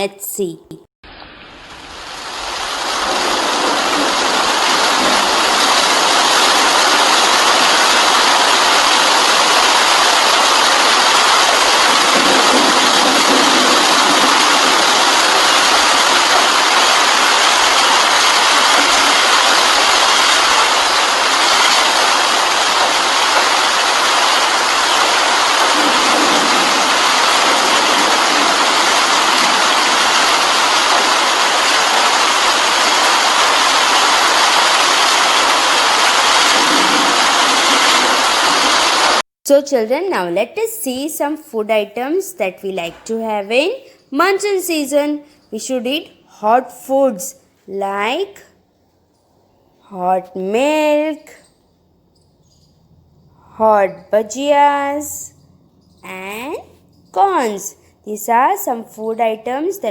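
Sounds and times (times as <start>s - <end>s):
heavy rain hissing: 1.1s - 39.2s.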